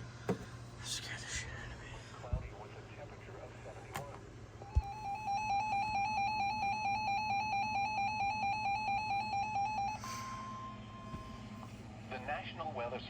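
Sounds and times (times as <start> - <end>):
harsh warbling alarm beep: 4.6 - 11.4
steady high alarm tone: 4.6 - 11.8.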